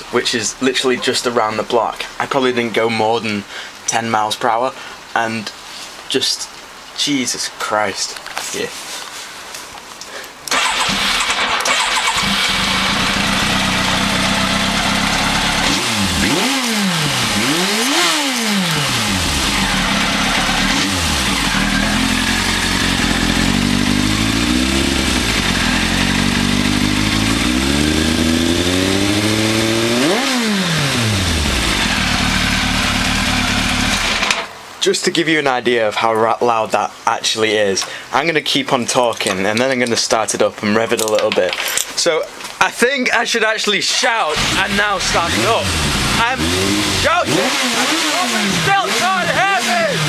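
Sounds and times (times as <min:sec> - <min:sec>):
motorcycle engine revving: 0:10.5 - 0:34.4, 0:44.3 - 0:50.0.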